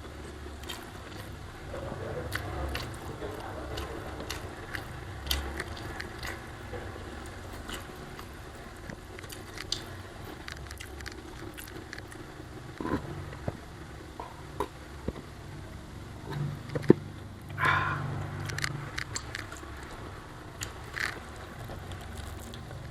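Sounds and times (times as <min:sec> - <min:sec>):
chewing and mouth noises: 0:00.0 - 0:13.6, 0:16.2 - 0:22.9
low hum: 0:00.0 - 0:22.9
small clicks and scrapes: 0:02.8 - 0:13.6, 0:18.5 - 0:22.8.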